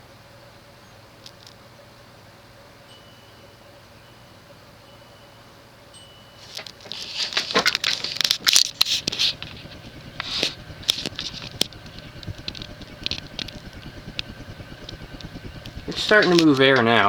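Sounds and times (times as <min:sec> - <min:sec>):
ceiling fan motor humming: 0:02.9 - 0:17.0
crackling and rustling clicks: 0:06.5 - 0:17.0.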